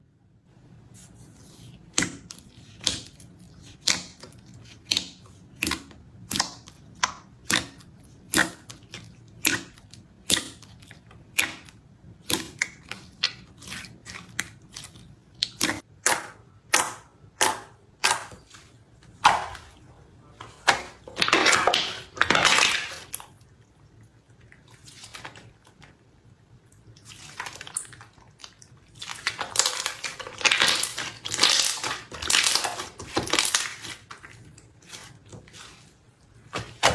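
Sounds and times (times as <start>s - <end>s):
slime crackling: 27.0s - 36.9s.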